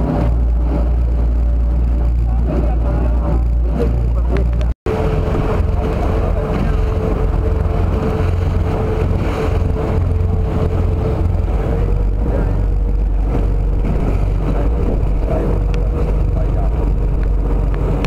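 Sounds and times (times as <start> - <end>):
boat engine rumble: 0.0 - 18.0.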